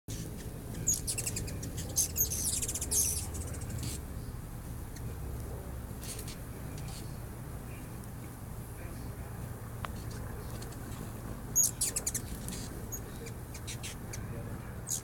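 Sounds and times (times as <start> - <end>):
hummingbirds chittering: 0.1 - 7.9, 8.6 - 15.0
low steady hum: 0.1 - 15.0.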